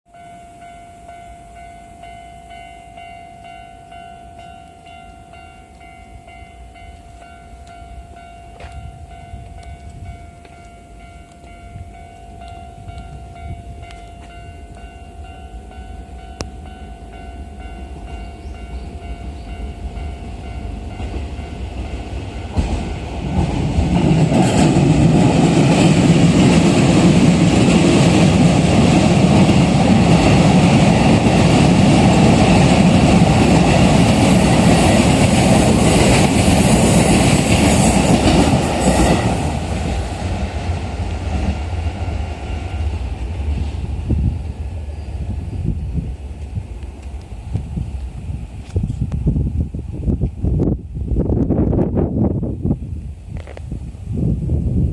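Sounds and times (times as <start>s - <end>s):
level-crossing bell ringing: 0.1s - 23.1s
electric train passing loudly: 0.1s - 54.9s
train rumble: 0.1s - 54.9s.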